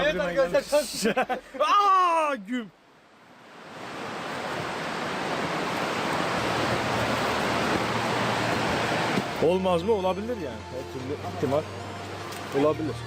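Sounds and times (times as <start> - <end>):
flowing creek water: 2.7 - 13.0.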